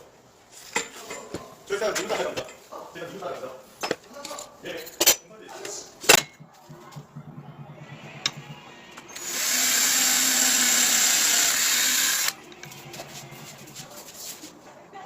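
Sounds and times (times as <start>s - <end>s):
angle grinder whining: 6.2s - 13.8s.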